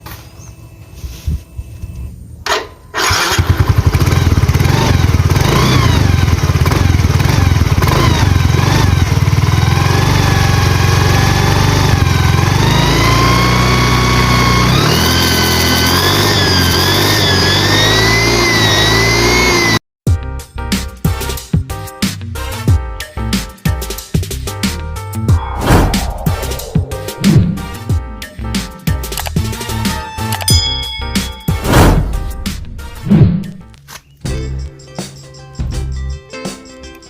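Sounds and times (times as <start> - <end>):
motorcycle engine revving: 3.0 - 19.8
high whistle whine: 25.3 - 28.0.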